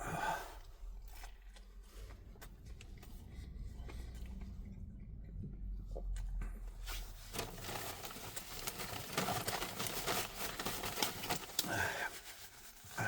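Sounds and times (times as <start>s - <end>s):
man chewing food: 0.2s - 6.8s.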